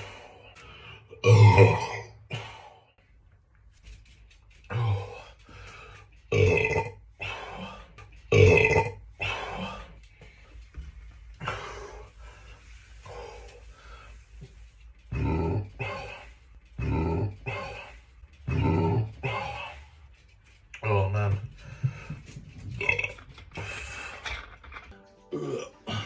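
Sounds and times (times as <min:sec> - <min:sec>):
person burping: 0:01.2 - 0:02.5, 0:06.4 - 0:07.0, 0:08.4 - 0:09.0, 0:15.1 - 0:16.0, 0:18.5 - 0:19.5, 0:25.3 - 0:26.0.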